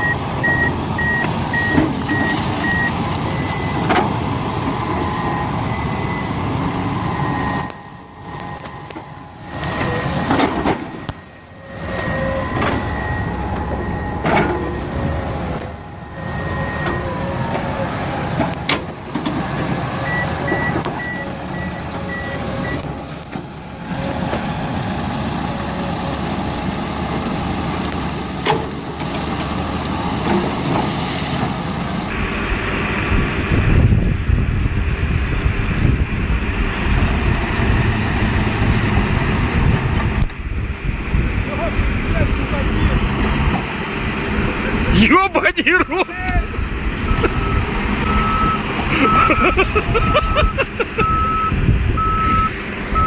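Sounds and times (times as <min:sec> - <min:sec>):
reversing alarm beeps: 0:00.0 - 0:03.9, 0:04.8 - 0:10.2, 0:11.0 - 0:17.4, 0:20.0 - 0:22.8, 0:47.1 - 0:49.4, 0:50.0 - 0:53.0
heavy diesel engine under load: 0:00.0 - 0:53.0.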